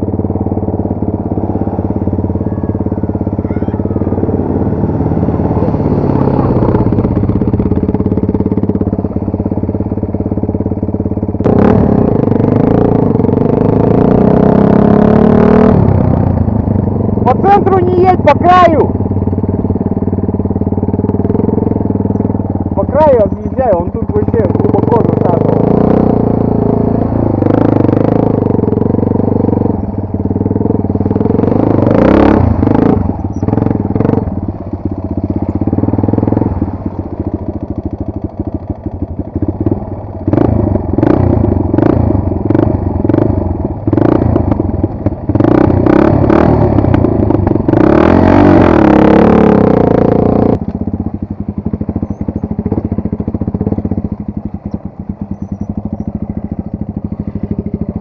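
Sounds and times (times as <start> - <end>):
motorcycle engine revving: 0.0 - 58.0.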